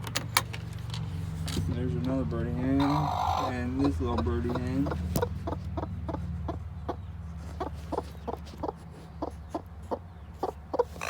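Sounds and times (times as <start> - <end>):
hen clucking: 2.6 - 11.0.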